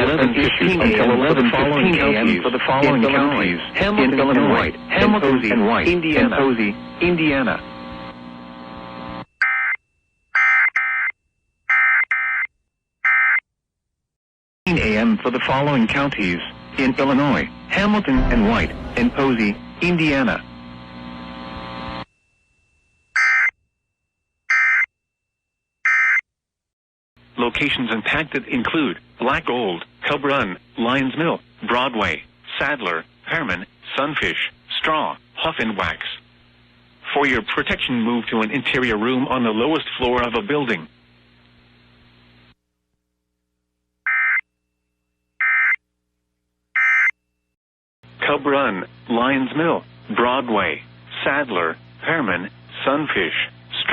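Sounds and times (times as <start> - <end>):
broadcast hiss: 27.3 - 42.6, 48.3 - 53.9.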